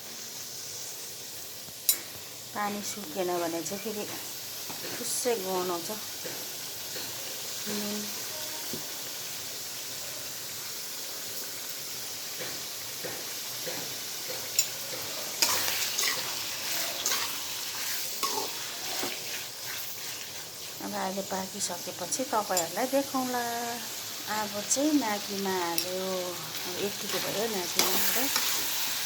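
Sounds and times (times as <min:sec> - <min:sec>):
chicken sizzling in a pan: 0:00.0 - 0:29.0
stirring knocks and scrapes: 0:12.4 - 0:20.8.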